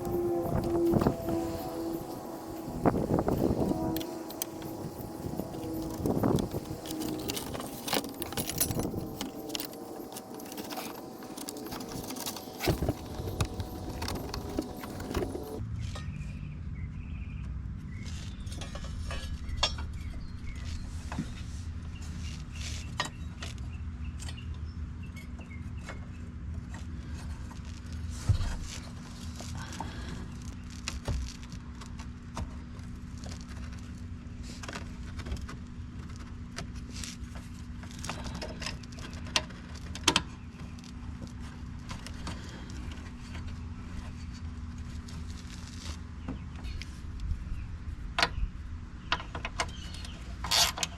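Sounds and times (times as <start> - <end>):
hand tools and metal parts clinking: 0.0 - 16.3, 18.0 - 26.0
steady low hum: 0.0 - 49.6.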